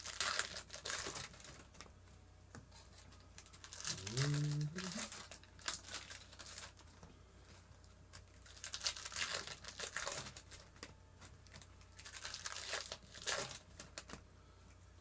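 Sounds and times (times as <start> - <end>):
wrapper crinkling and tearing: 0.0 - 1.9, 3.0 - 6.9, 8.1 - 14.2.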